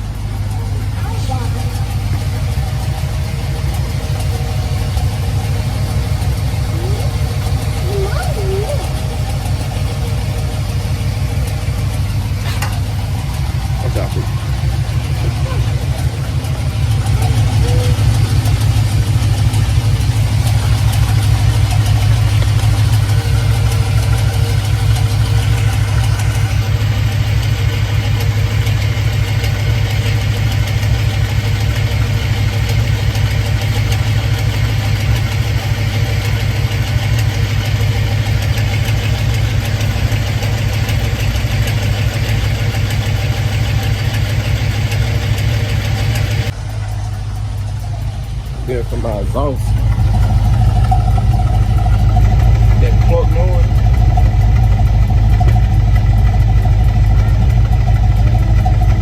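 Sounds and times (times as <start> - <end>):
car engine idling: 0.0 - 59.0.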